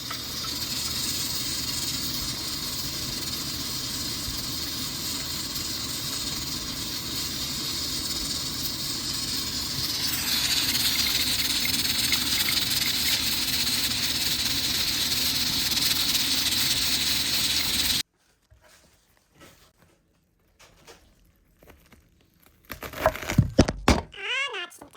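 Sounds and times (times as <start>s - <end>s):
steady hissing: 0.0s - 18.0s.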